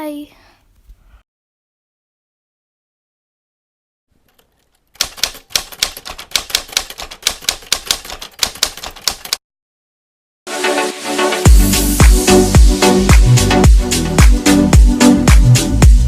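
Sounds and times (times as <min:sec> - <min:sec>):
typewriter keys clacking: 0:04.2 - 0:09.4.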